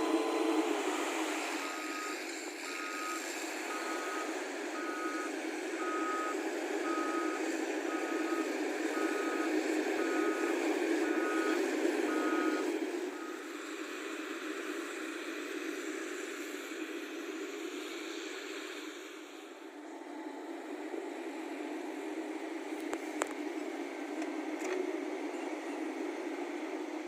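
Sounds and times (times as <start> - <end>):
reversing alarm beeping: 0.0 - 13.6
diesel engine running: 0.0 - 27.0.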